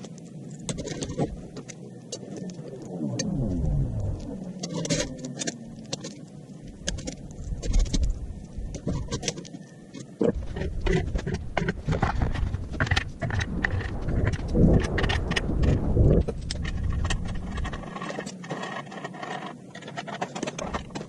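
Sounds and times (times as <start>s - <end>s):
clicks knocks and clanks of metal parts: 19.8s - 21.0s.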